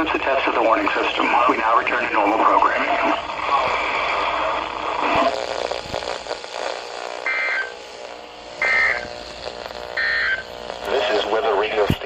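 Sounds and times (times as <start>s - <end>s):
radio hiss: 0.0s - 12.0s
short high-pitched digital data bursts: 7.0s - 7.9s, 8.6s - 9.2s, 9.9s - 10.5s.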